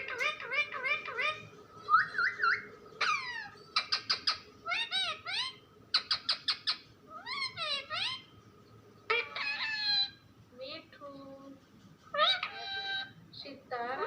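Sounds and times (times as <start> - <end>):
parrot chirping and squawking: 0.0 - 8.4, 9.0 - 10.3, 12.0 - 13.3.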